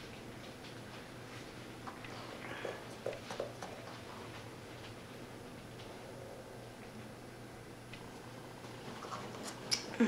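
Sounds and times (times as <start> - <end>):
low room hum: 0.0 - 10.0.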